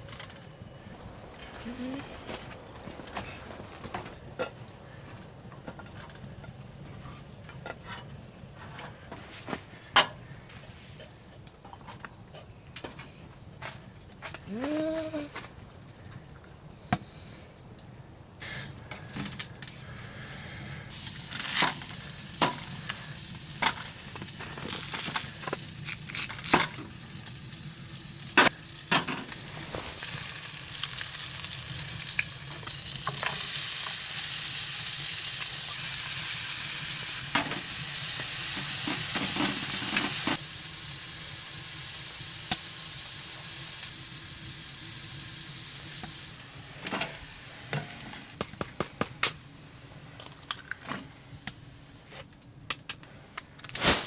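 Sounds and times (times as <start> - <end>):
food sizzling in a pan: 20.9 - 52.1, 53.8 - 54.0.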